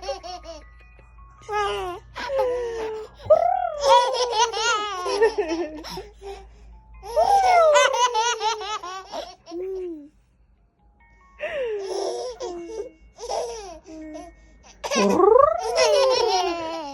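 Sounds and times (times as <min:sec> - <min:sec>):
baby giggling: 0:11.8 - 0:16.9.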